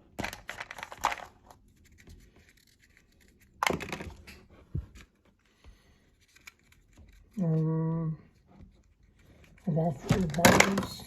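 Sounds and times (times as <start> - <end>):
plastic clatter: 0.2 - 1.6, 9.9 - 11.0.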